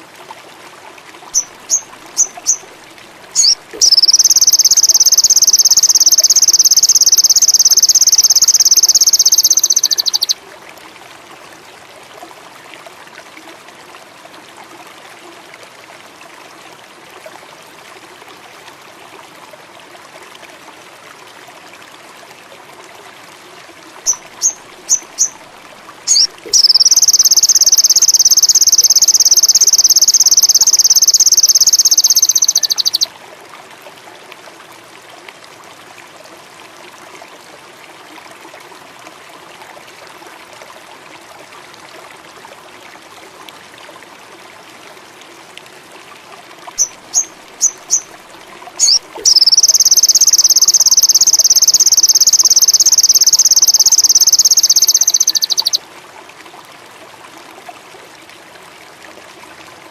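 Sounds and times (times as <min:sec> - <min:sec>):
trickle of running water: 0:00.0 - 0:59.9
short bird chirps: 0:01.4 - 0:02.6, 0:03.4 - 0:10.4, 0:26.1 - 0:33.1, 0:48.8 - 0:55.8
songbird buzzing trills: 0:03.4 - 0:10.4, 0:26.1 - 0:33.1, 0:48.8 - 0:55.8.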